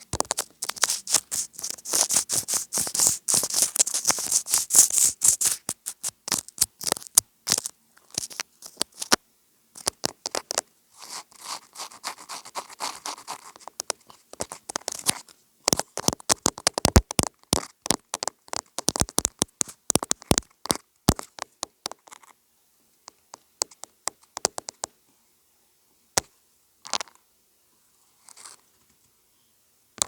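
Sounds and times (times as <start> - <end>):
scratching on object: 0.0 - 9.2, 9.8 - 22.4, 28.2 - 28.6
soft rubbing: 0.0 - 9.2, 10.3 - 15.4
tapping on object: 13.6 - 22.2, 23.1 - 24.9.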